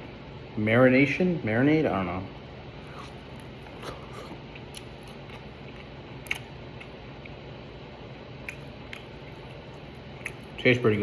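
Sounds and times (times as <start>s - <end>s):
low room hum: 0.0s - 11.0s
person chewing food: 2.8s - 7.4s, 8.4s - 10.6s.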